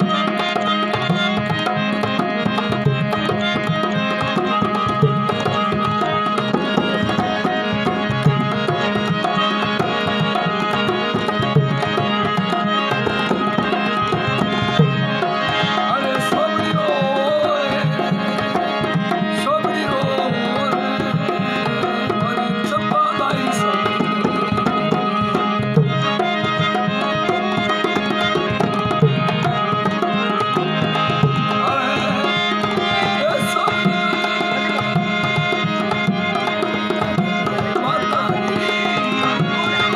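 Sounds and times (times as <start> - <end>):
hand drum rhythm: 0.0 - 15.4, 16.4 - 39.9
held drone: 0.0 - 39.9
wavering melodic line: 19.4 - 39.9.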